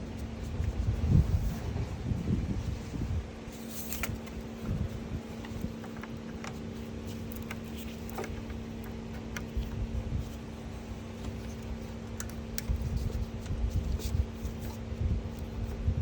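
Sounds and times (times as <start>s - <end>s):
steady low hum: 0.0s - 16.0s
light clicks and taps: 5.3s - 10.4s.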